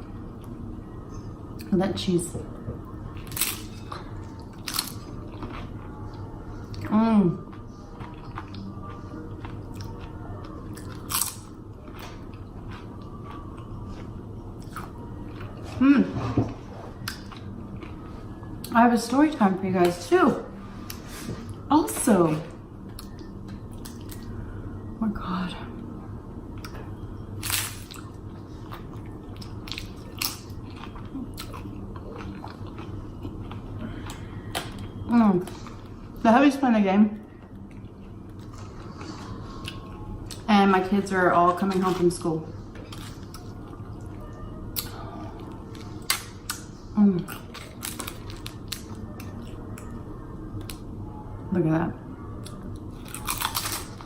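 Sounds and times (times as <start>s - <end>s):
chewing: 3.1s - 15.8s, 26.6s - 36.0s, 42.7s - 46.7s, 52.4s - 54.0s
chips crunching while chewing: 3.2s - 5.6s, 10.7s - 13.6s, 27.4s - 28.1s, 47.3s - 49.6s, 52.9s - 54.0s.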